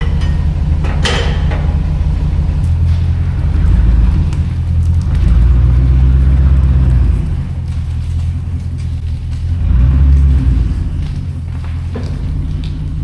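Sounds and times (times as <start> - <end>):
metallic clank: 0.0 - 3.2
large engine rumbling: 0.0 - 13.0.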